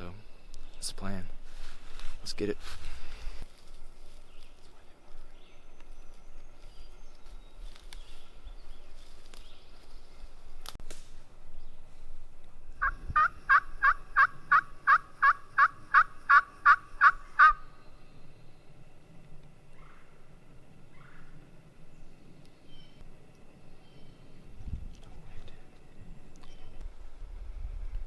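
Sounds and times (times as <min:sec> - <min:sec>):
turkey call hen yelps: 0:12.8 - 0:17.6.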